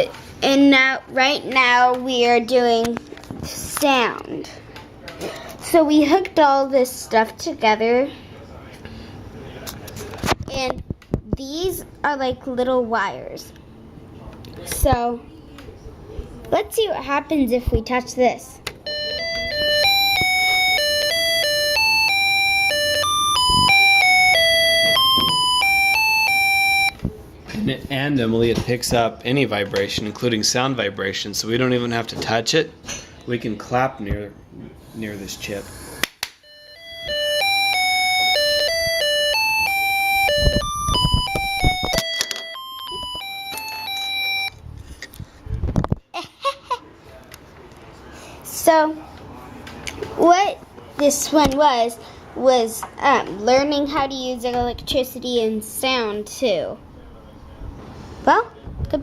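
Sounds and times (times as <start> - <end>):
electronic tune from small speaker: 18.8 - 27.0, 36.4 - 44.6.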